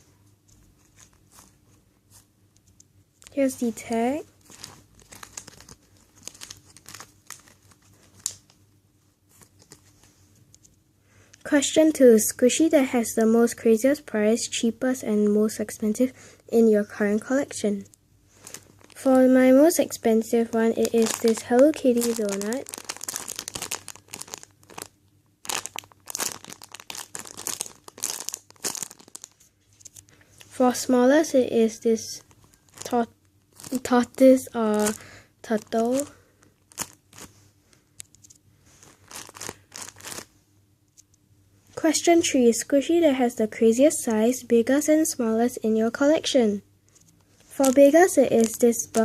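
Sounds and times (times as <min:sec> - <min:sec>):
packaging crinkling and rustling: 0:00.6 - 0:01.6, 0:03.2 - 0:08.6, 0:09.3 - 0:10.1, 0:18.3 - 0:19.2, 0:20.4 - 0:30.6, 0:32.2 - 0:40.3, 0:46.9 - 0:49.0.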